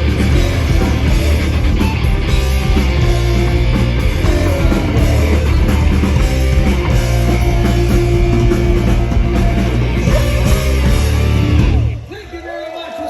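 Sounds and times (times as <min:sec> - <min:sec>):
bass guitar: 0:00.0 - 0:12.1
electric guitar: 0:00.0 - 0:12.1
drum kit: 0:00.0 - 0:12.2
rock band playing: 0:00.0 - 0:12.2.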